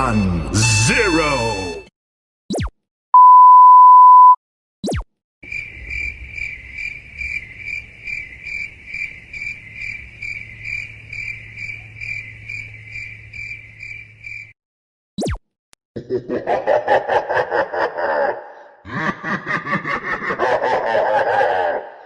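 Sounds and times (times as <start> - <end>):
censor beep: 3.2 - 4.4
crickets chirping: 5.4 - 14.6.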